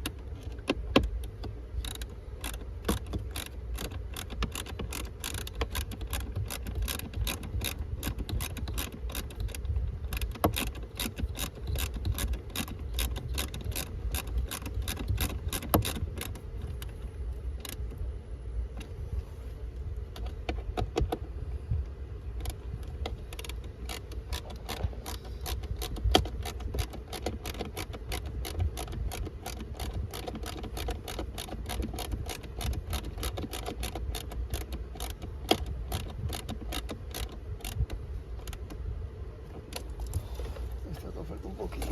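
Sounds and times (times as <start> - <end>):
hand ratchet clicking: 0.0 - 16.9, 23.3 - 38.7.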